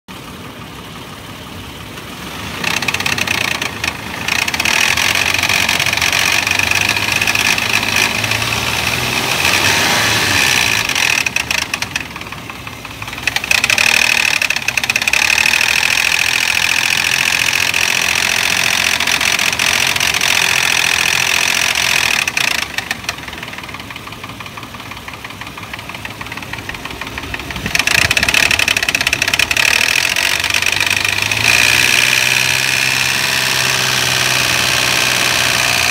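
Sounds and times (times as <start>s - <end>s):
engine running with knocking: 0.1s - 35.9s.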